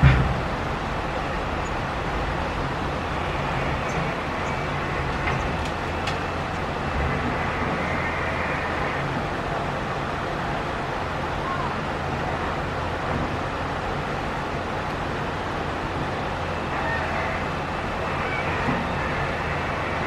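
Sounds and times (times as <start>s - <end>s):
excavator diesel engine running: 0.0s - 20.0s.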